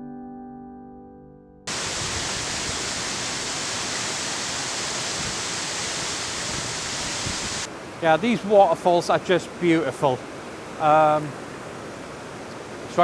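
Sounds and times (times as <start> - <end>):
waterfall rushing: 1.7 - 13.0.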